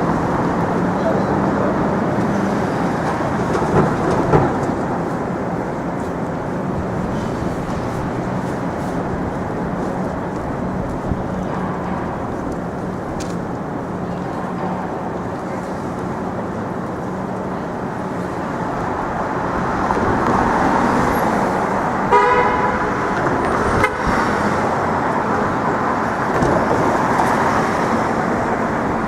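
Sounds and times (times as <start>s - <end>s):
city street traffic: 0.0s - 29.0s
vehicle horn toot: 22.1s - 23.0s, 23.8s - 24.2s.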